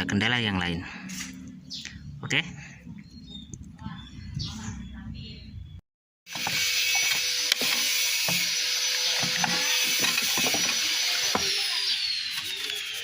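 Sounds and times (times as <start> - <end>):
small tool whining: 6.3 - 13.0.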